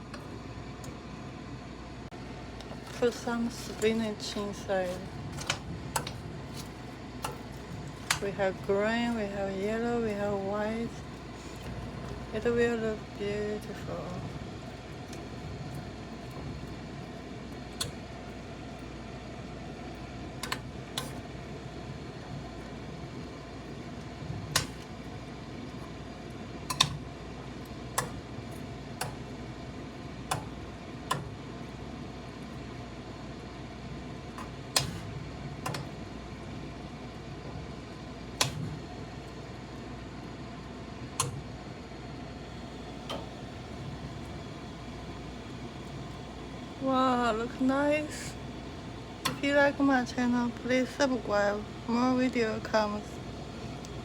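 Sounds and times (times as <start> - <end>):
soup cooking hum: 0.0 - 54.0.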